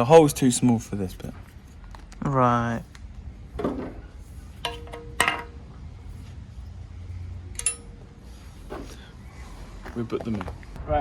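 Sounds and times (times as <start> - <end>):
metallic clinks with ringing: 7.5 - 8.0.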